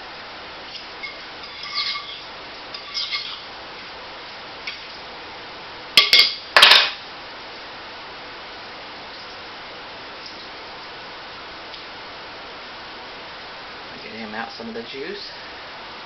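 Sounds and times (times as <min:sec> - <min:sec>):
metal utensil scraping crock: 0:01.0 - 0:03.5.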